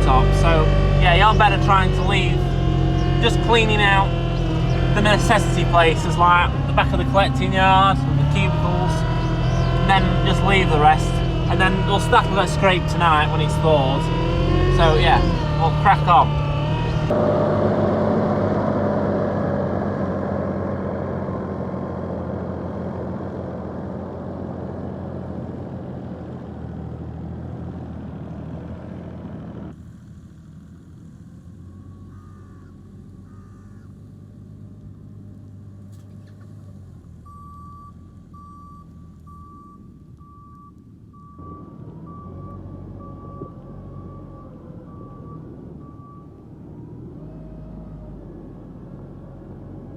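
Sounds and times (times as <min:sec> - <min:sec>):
diesel engine running: 0:00.0 - 0:49.9
reversing alarm beeping: 0:37.2 - 0:46.3.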